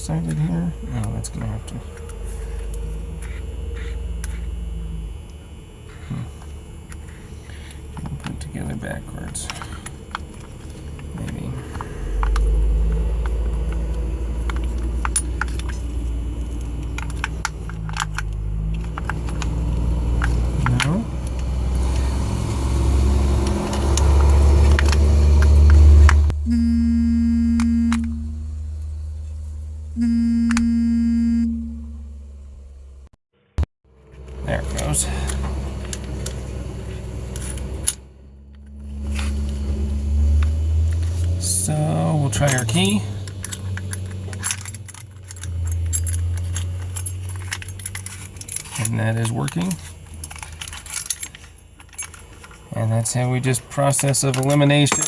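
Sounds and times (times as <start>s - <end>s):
steady low rumble: 0.0s - 21.4s, 26.0s - 33.1s
low steady hum: 0.0s - 22.4s, 23.6s - 33.1s, 34.0s - 55.0s
metallic lock parts clicking: 42.4s - 52.7s, 53.9s - 55.0s.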